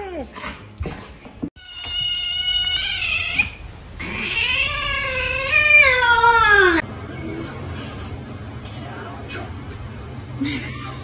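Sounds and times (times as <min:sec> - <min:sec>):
cat meowing: 0:01.6 - 0:06.8.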